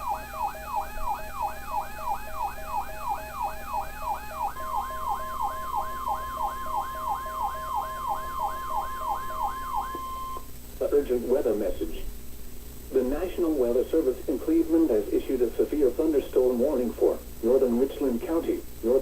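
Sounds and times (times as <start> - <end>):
electronic alarm falling sweep: 0.0 - 10.5
steady warning tone: 0.0 - 10.5.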